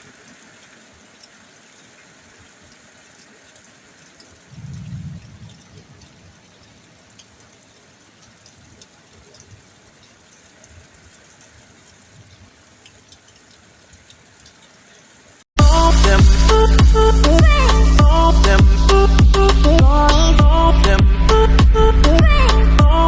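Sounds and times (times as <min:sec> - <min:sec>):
rain falling: 0:00.0 - 0:23.0
raindrop ticks: 0:00.1 - 0:15.2
brief low rumble: 0:04.6 - 0:05.8.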